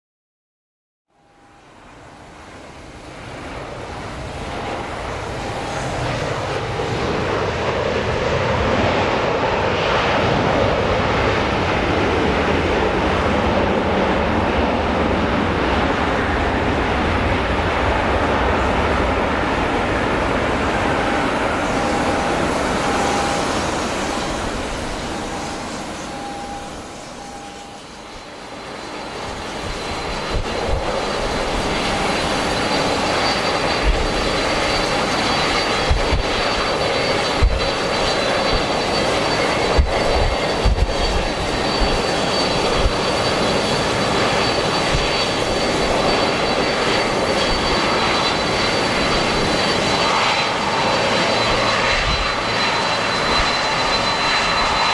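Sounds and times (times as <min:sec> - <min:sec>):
high engine whine: 0:01.1 - 0:54.9
jet engines running: 0:01.2 - 0:54.9
wind buffeting microphone: 0:28.8 - 0:54.9.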